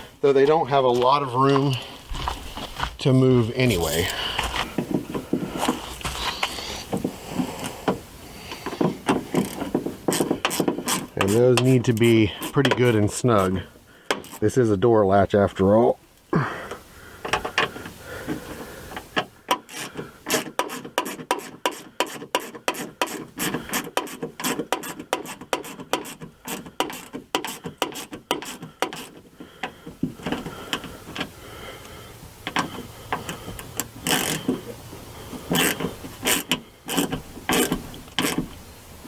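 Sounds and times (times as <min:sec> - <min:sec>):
hand ratchet clicking: 0:08.6 - 0:13.5, 0:14.1 - 0:14.4, 0:19.5 - 0:29.2, 0:32.5 - 0:34.6, 0:35.4 - 0:38.5.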